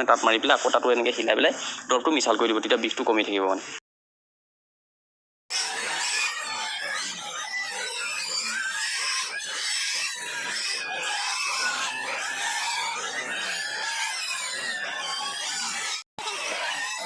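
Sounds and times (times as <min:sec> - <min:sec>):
piglets squealing and grunting: 0:05.5 - 0:17.0.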